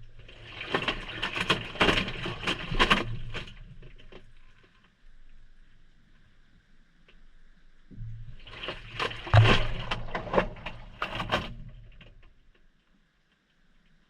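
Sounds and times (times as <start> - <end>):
wet clothes and water sloshing: 0.1 - 4.7.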